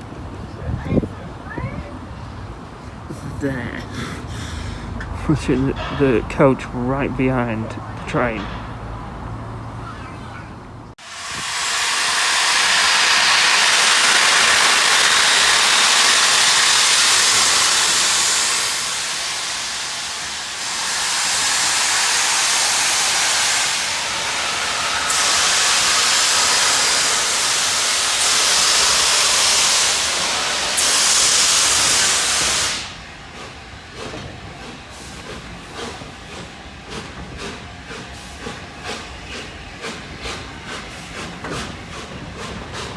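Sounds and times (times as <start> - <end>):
steam locomotive venting steam: 11.0 - 42.9.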